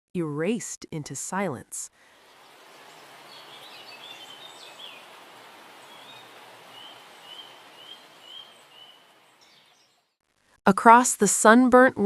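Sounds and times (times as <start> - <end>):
steady background hiss: 2.1 - 10.0
small birds chirping: 2.1 - 10.2.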